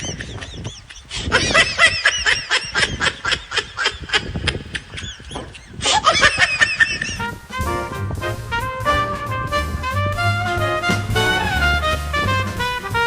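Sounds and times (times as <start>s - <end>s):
high-pitched cackling calls: 0.0s - 12.1s
swing music with brass: 7.0s - 13.0s.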